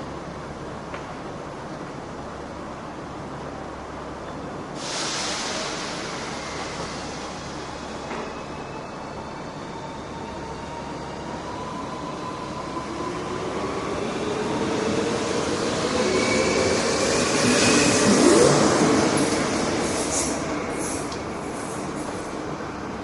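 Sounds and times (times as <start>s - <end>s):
train passing with rising whine: 5.5s - 23.0s.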